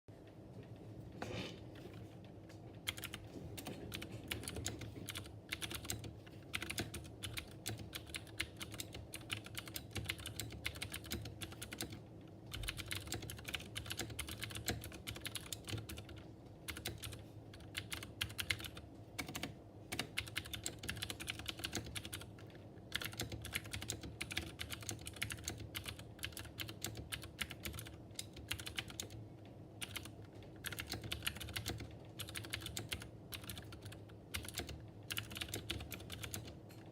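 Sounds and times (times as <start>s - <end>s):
mechanical keyboard typing clicks: 2.8s - 29.2s, 29.8s - 36.9s.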